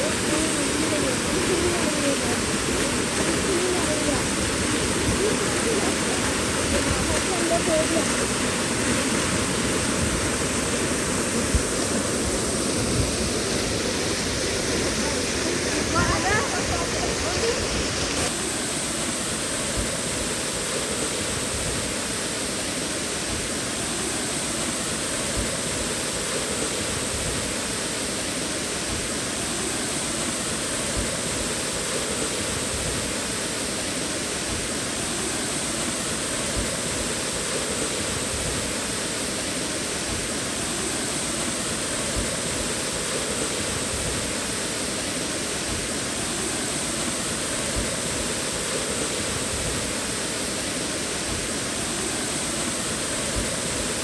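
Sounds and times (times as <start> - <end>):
waterfall roaring: 0.0 - 54.0.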